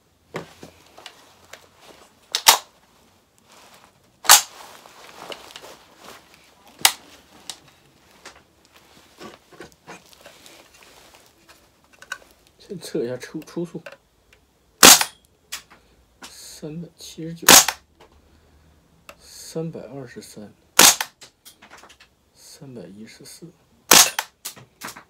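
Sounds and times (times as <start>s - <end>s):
airsoft rifle sharp clacks: 2.4s - 2.7s, 4.2s - 4.5s, 14.8s - 15.7s, 17.5s - 17.8s, 20.8s - 21.3s, 23.9s - 25.0s.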